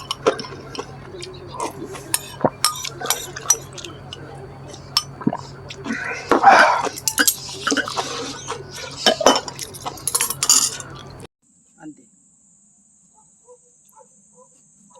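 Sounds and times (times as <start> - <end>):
cutlery and dishes clinking: 0.0 - 11.3
eating sounds: 0.0 - 11.3.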